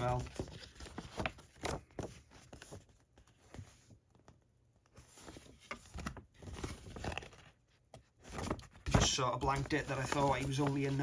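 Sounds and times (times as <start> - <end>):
soft packaging rustles: 0.0 - 11.0.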